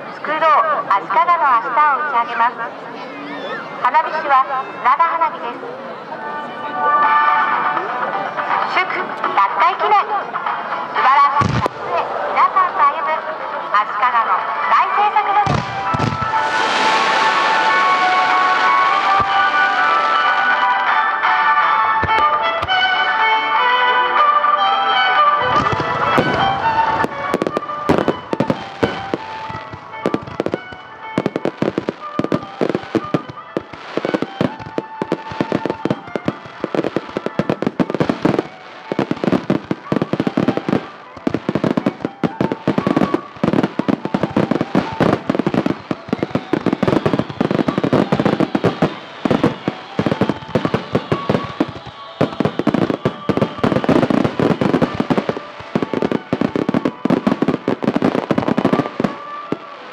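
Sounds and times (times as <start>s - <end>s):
fireworks bangs and crackling: 3.6s - 23.4s, 25.1s - 59.9s
music playing: 5.4s - 59.9s.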